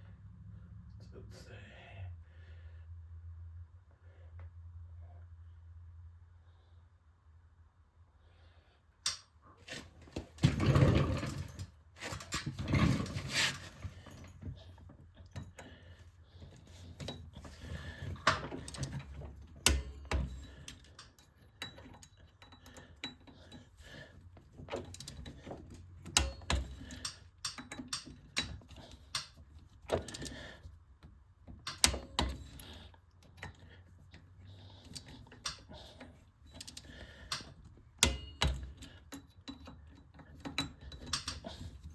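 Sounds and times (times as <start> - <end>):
metal tools clinking: 34.7 - 41.9.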